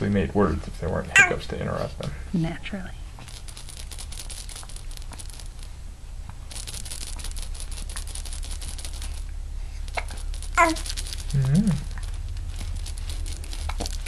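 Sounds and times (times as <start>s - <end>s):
crinkling crackling rustle: 3.1s - 14.0s.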